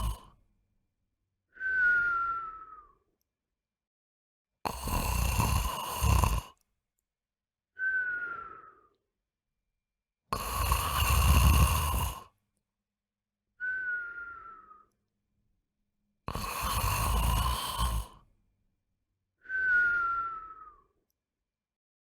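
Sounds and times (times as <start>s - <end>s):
dog snoring rasping: 0.0s - 0.2s, 4.7s - 6.6s, 10.4s - 12.3s, 16.3s - 18.2s
whistling out-breath: 1.5s - 3.2s, 7.8s - 9.1s, 13.6s - 15.1s, 19.4s - 21.0s.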